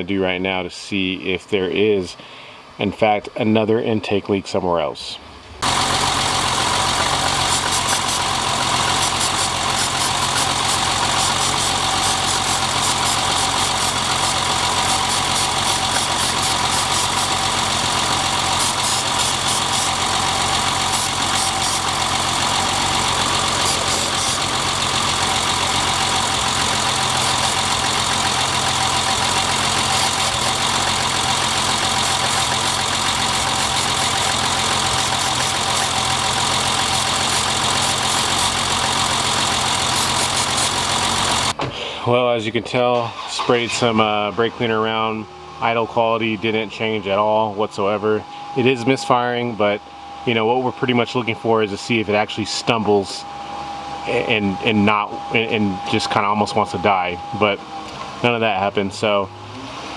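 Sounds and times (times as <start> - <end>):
car engine idling with misfire: 5.6 - 42.0.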